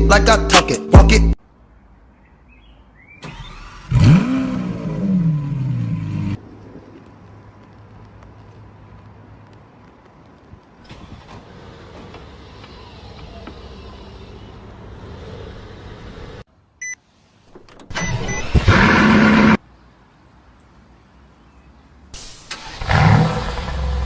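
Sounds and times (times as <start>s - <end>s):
car engine start-up blip: 3.2s - 4.2s, 17.6s - 19.6s, 22.2s - 23.7s
short electronic beeps: 16.8s - 17.0s, 18.0s - 18.6s.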